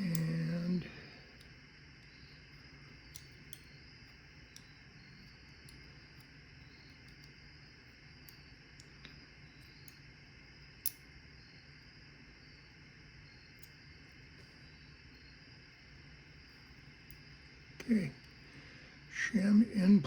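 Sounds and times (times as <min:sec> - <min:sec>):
small metal clicks of padlock parts: 0:01.4 - 0:07.4, 0:08.2 - 0:10.1, 0:10.8 - 0:11.1, 0:13.5 - 0:13.8.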